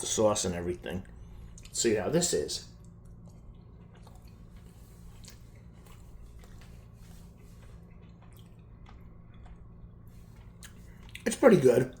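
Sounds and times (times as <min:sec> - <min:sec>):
low steady hum: 0:00.0 - 0:12.0
person chewing food: 0:02.8 - 0:11.3.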